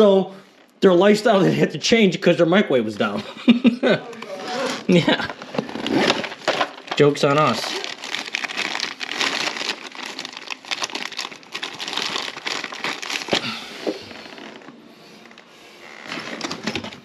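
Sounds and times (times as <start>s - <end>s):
crinkling handling noise: 4.1s - 17.0s.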